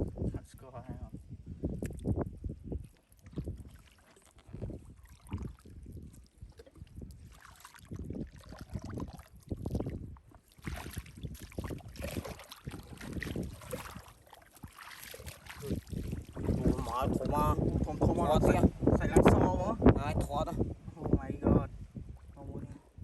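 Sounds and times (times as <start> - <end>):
wind buffeting microphone: 0.0 - 23.0
water sloshing: 2.7 - 18.6.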